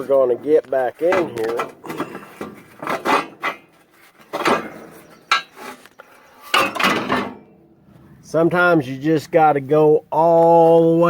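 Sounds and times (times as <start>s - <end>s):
metal clanking: 1.0s - 5.8s, 6.4s - 7.6s.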